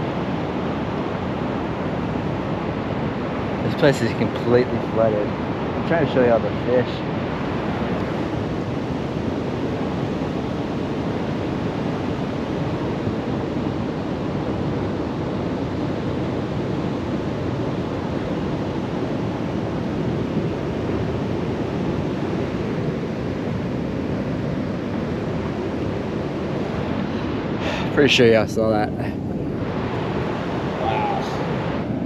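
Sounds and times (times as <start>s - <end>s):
fast floodwater rushing: 2.5s - 8.3s, 26.3s - 32.0s.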